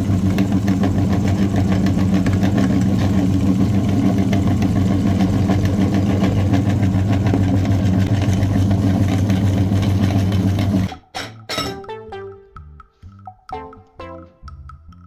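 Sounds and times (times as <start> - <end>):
engine idling with ticking: 0.0 - 8.2.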